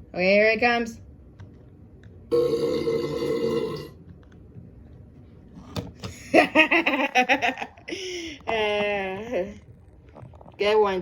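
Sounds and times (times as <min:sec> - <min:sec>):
person burping: 0:02.3 - 0:04.0.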